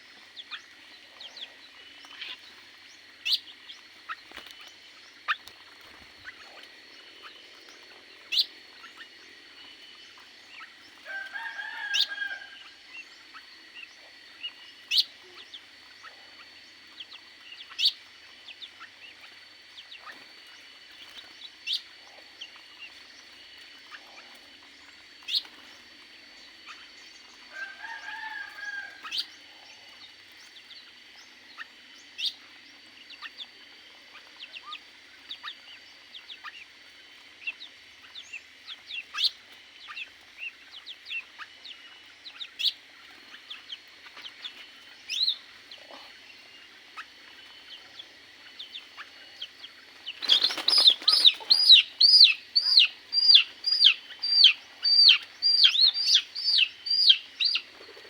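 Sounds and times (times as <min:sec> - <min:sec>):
bird longer fuller calls: 0:37.5 - 0:58.0
bird sharp chirps: 0:50.1 - 0:57.9.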